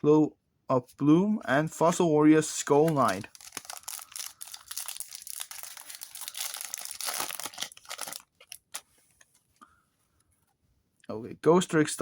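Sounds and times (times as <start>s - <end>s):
cards clicking and rustling: 2.7s - 8.8s
foil wrapper tearing and crinkling: 2.8s - 8.8s.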